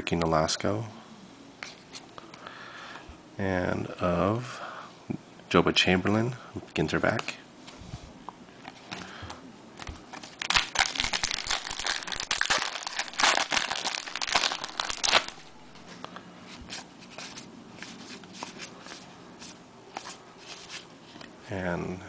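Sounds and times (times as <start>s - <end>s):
cards rustling and clicking: 9.8s - 15.4s
foil wrapper crinkling and tearing: 10.2s - 15.5s.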